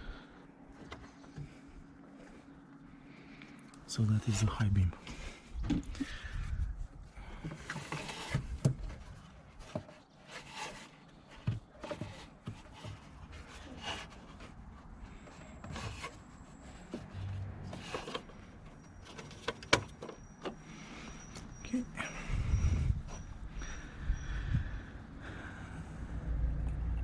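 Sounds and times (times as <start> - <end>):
hands rubbing and scraping plastic: 7.4 - 20.2.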